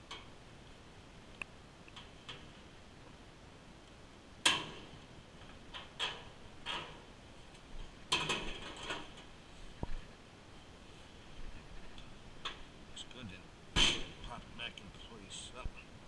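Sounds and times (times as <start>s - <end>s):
metal clanks from dryer drum: 5.7s - 7.1s, 8.1s - 9.3s, 13.8s - 14.3s.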